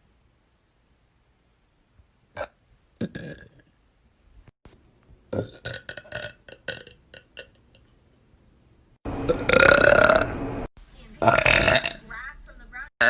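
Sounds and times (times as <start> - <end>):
person burping: 2.4 - 3.6, 5.3 - 7.6, 9.3 - 10.3, 11.2 - 12.0.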